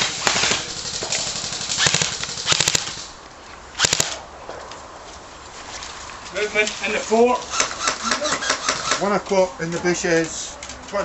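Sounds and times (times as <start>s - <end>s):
airsoft guns firing bursts: 0.0s - 3.2s, 3.8s - 4.2s.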